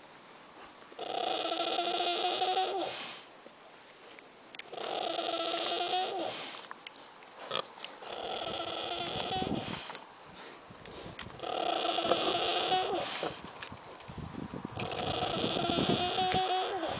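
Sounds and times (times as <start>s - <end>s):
pig snoring: 1.0s - 3.3s, 4.7s - 6.6s, 7.4s - 9.8s, 11.4s - 13.4s, 14.8s - 16.9s.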